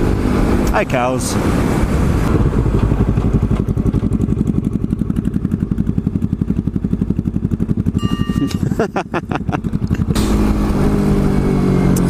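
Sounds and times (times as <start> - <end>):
motorcycle engine at low revs: 0.0 - 12.0
wind rush: 1.3 - 4.1.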